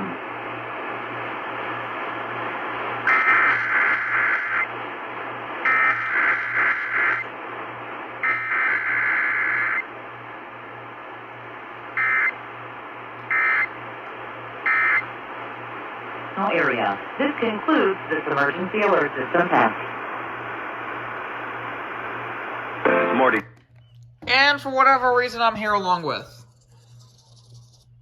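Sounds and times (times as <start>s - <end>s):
low hum and hiss: 0.0s - 28.0s
warbling digital data bursts: 24.6s - 28.0s.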